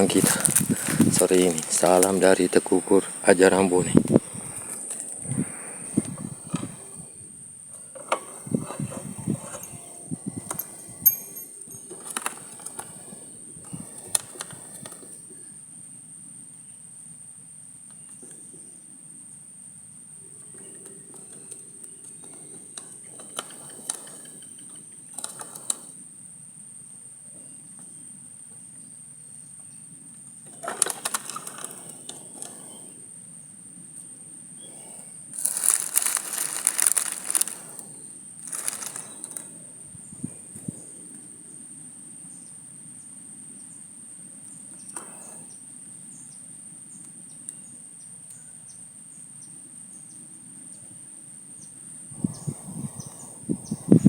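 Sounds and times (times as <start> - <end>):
rustling or flapping: 0.0 - 7.2, 35.4 - 39.5
high-pitched insect trill: 0.0 - 7.6, 8.2 - 15.6, 35.3 - 40.9
scattered clicks: 35.4 - 37.8, 38.4 - 39.4.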